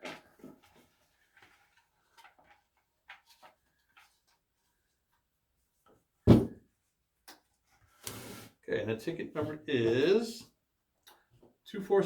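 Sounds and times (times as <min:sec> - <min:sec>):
faint clicks and rustles: 0:00.0 - 0:06.0
loud short thump: 0:06.3 - 0:06.6.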